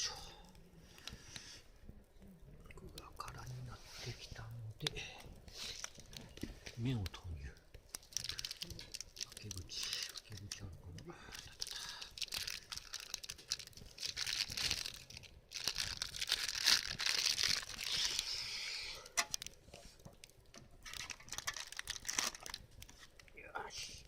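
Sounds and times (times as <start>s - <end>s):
plastic packet crinkling: 5.5s - 23.3s.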